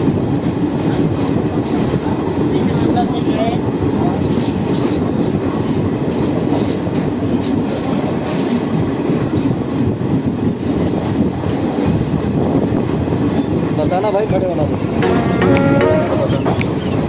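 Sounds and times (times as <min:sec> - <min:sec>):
train wheels on rails: 0:00.0 - 0:13.4.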